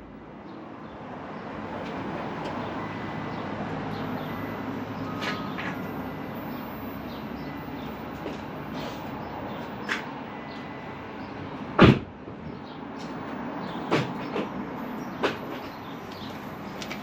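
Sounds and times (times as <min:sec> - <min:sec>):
car engine drone: 0:01.4 - 0:11.8
loud thump: 0:11.8 - 0:12.1.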